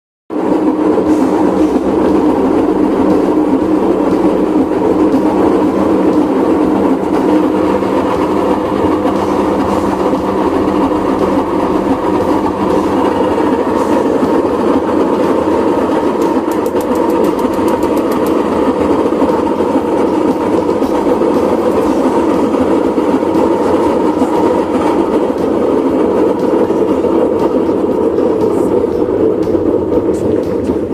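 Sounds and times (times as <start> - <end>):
washing machine whirring: 0.3 - 30.9.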